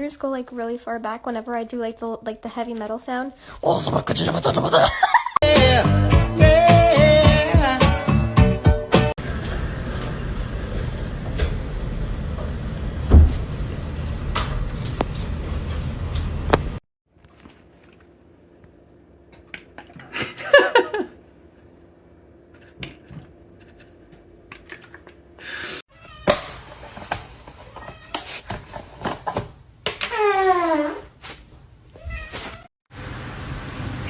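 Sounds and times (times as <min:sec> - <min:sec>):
cat meowing: 0:32.0 - 0:32.7.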